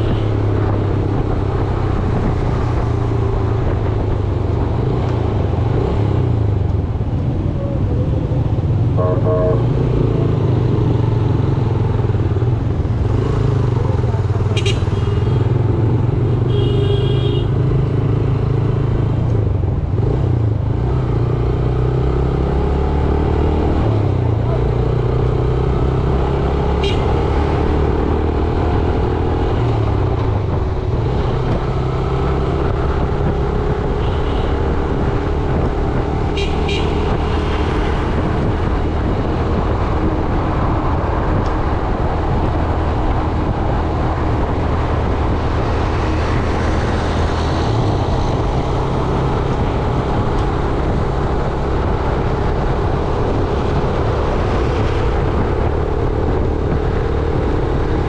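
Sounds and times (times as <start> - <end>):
traffic noise: 0.0 - 58.0
vehicle horns: 9.0 - 10.0, 14.5 - 15.6, 16.5 - 17.5, 26.8 - 27.2, 34.0 - 34.6, 36.3 - 37.6.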